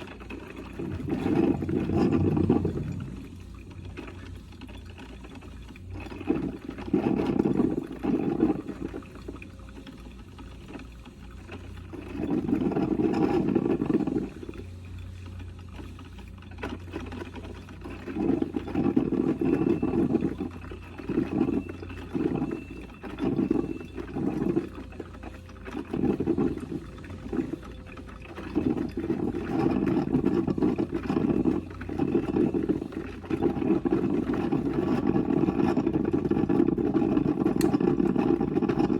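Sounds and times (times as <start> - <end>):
steady low hum: 0.0 - 9.6
coffee percolator gurgling: 0.0 - 38.9.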